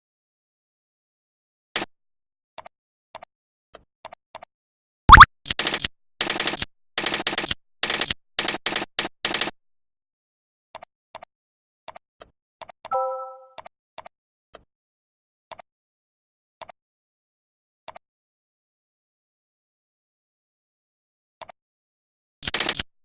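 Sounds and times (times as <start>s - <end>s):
mouse clicks: 5.1s - 5.9s.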